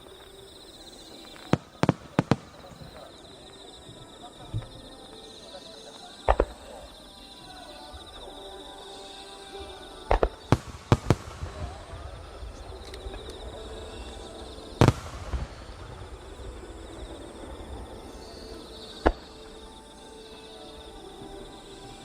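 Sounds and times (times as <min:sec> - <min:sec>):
fireworks booming: 0:00.0 - 0:03.2, 0:10.1 - 0:19.8
fireworks crackling: 0:00.0 - 0:22.0
music playing: 0:00.0 - 0:22.0.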